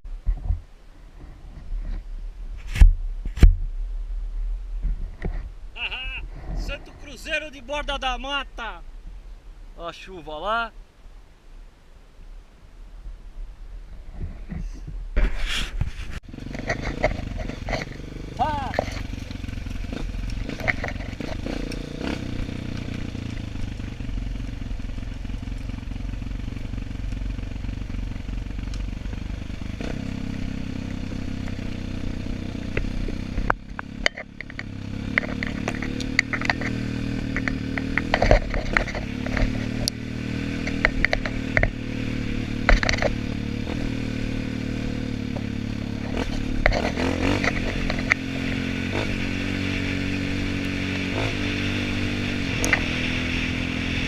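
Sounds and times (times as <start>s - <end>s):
motorcycle engine revving: 16.2s - 54.0s
clatter and knocks: 16.5s - 18.0s, 20.0s - 21.7s, 33.4s - 39.9s, 40.6s - 41.8s, 42.6s - 43.2s.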